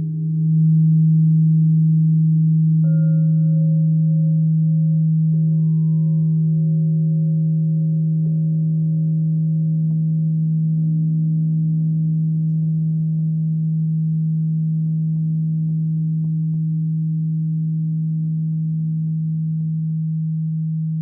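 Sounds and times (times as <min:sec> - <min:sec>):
singing bowl ringing: 0:00.0 - 0:21.0.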